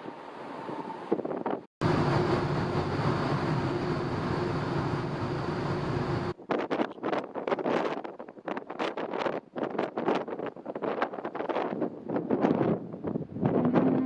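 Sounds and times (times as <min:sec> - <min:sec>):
wind buffeting microphone: 0:00.0 - 0:14.0
ferry engines droning: 0:01.8 - 0:06.4.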